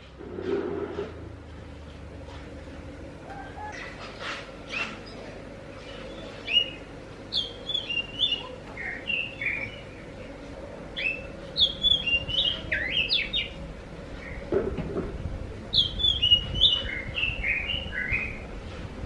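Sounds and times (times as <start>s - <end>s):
bird singing whistled notes: 5.9s - 9.9s, 11.0s - 13.6s, 15.7s - 18.4s.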